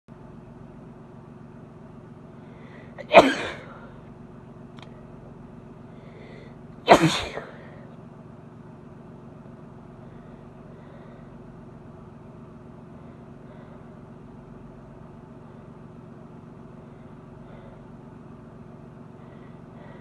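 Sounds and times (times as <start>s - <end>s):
steady low hum: 0.1s - 20.0s
woman sneezing: 3.0s - 3.9s, 6.9s - 7.8s.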